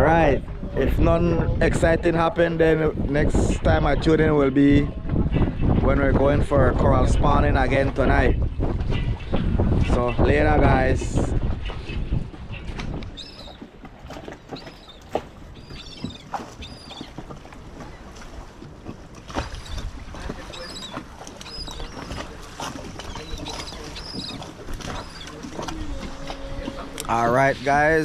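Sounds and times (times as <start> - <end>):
small birds chirping: 11.6 - 13.7, 14.4 - 17.2, 19.4 - 25.8.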